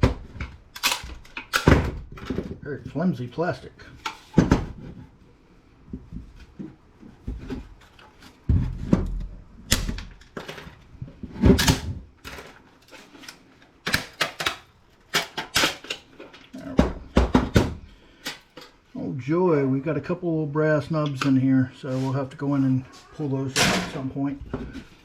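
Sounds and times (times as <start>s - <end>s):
plastic casing clicks and snaps: 13.2s - 16.1s.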